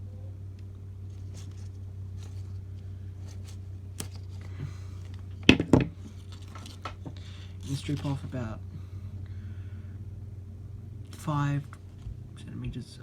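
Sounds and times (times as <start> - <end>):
steady low hum: 0.0 - 13.0
wire strippers clicking: 0.5 - 8.3.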